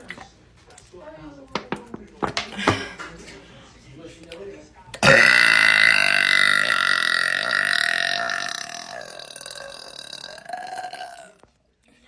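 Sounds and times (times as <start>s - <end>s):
long loud pitched burp: 5.0s - 11.4s.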